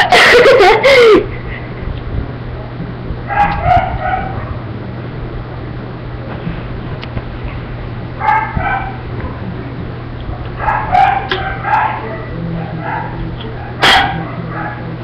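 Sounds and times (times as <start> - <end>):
steady low hum: 0.0 - 15.0
dog yipping and whining: 3.3 - 4.6, 10.6 - 14.9.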